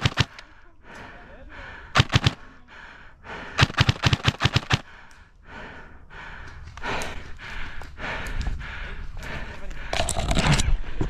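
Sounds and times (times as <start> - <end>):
airsoft gun shots: 2.0 - 2.4, 3.6 - 4.8.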